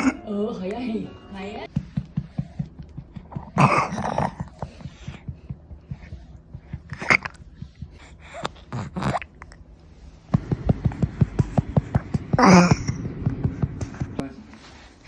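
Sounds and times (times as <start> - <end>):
baby vocal sounds: 8.0 - 9.6.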